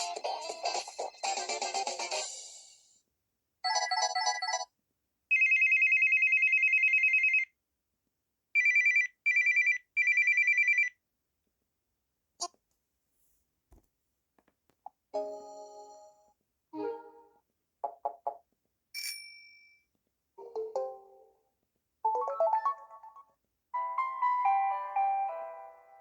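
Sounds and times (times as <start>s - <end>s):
phone melodic tone: 23.8s - 26.0s.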